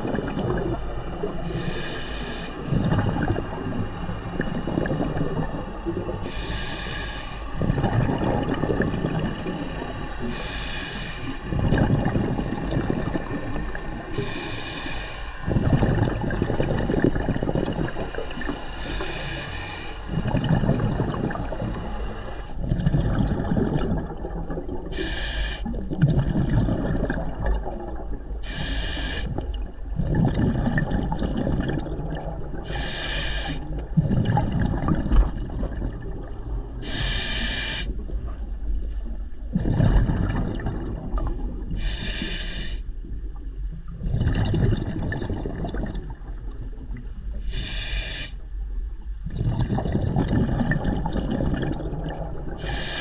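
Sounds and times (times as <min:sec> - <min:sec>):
exhaled air bubbling: 0:00.0 - 0:53.0
regulator hissing inhale: 0:01.4 - 0:02.7, 0:06.2 - 0:07.6, 0:10.1 - 0:11.5, 0:14.0 - 0:15.6, 0:17.8 - 0:20.3, 0:21.3 - 0:22.6, 0:24.9 - 0:25.7, 0:28.4 - 0:29.3, 0:32.7 - 0:33.7, 0:36.8 - 0:37.9, 0:41.8 - 0:42.9, 0:47.4 - 0:48.5, 0:52.6 - 0:53.0.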